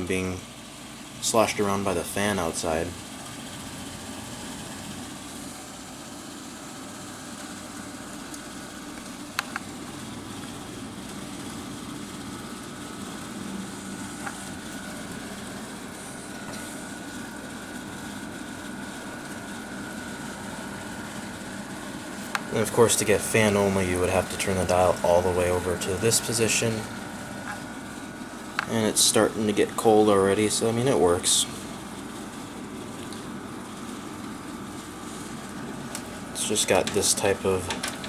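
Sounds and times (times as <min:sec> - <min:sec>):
air conditioner humming and blowing: 0:00.0 - 0:38.0
faint high whine: 0:09.4 - 0:31.7.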